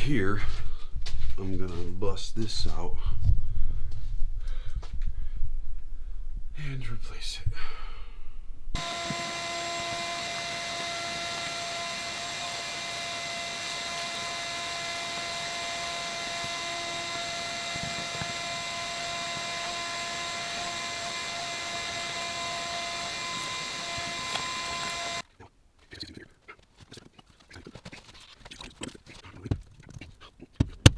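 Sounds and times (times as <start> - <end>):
small electric motor whining: 8.8 - 25.2.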